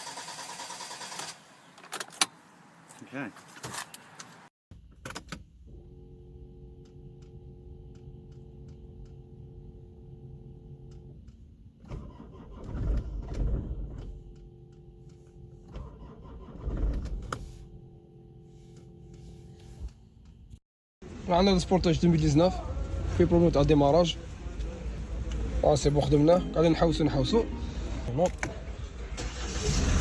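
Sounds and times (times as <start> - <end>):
car engine cranking: 4.7 - 20.6, 29.2 - 30.0.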